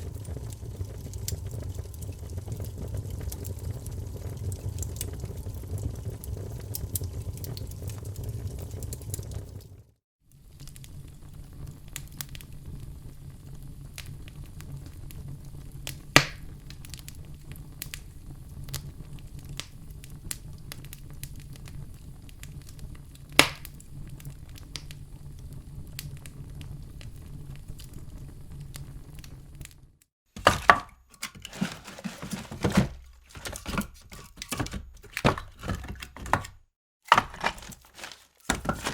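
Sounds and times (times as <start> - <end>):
loud fire pops: 0.0 - 9.8, 10.5 - 29.8
fire burning in fireplace: 0.0 - 38.9
fire crackles: 0.0 - 38.9
cracking and knocking: 30.4 - 38.9.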